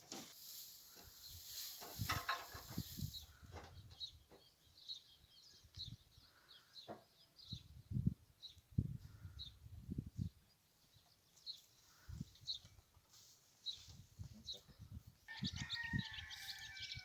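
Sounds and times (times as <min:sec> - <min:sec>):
rustle: 0:00.0 - 0:03.4, 0:12.9 - 0:14.2
small birds chirping: 0:00.5 - 0:17.0.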